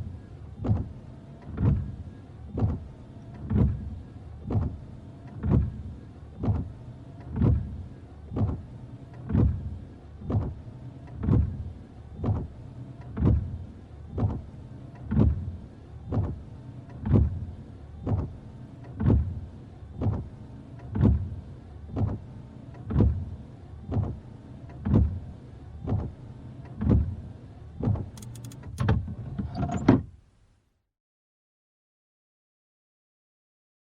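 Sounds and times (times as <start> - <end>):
windshield wipers sweeping: 0.0 - 30.1
sharp clicks: 28.1 - 28.9.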